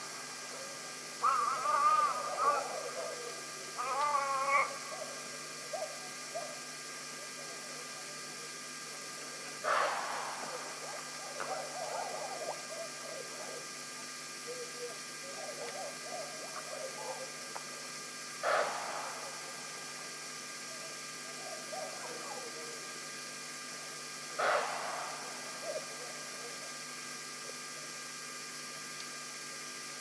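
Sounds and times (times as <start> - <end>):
animal sharp breathy bursts: 9.6 - 10.3.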